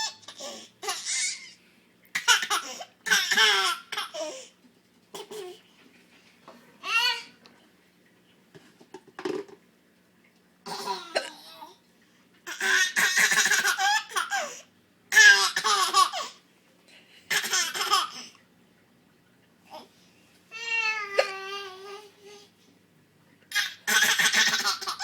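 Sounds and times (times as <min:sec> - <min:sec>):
baby laughing: 0:00.0 - 0:01.6, 0:02.2 - 0:04.4, 0:12.5 - 0:16.4, 0:17.3 - 0:18.3, 0:23.5 - 0:25.0.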